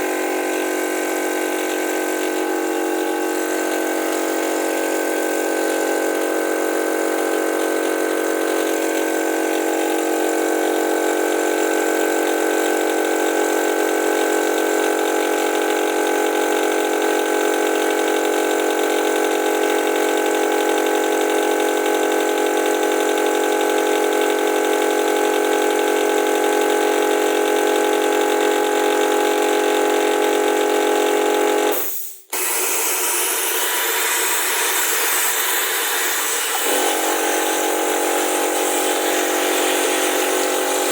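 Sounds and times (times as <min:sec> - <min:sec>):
air compressor humming: 0:00.0 - 0:40.9
vacuum gun hissing: 0:31.7 - 0:40.9.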